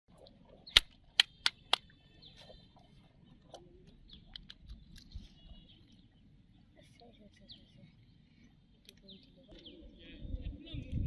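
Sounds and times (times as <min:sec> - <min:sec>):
sharp clicks: 0:00.7 - 0:01.9.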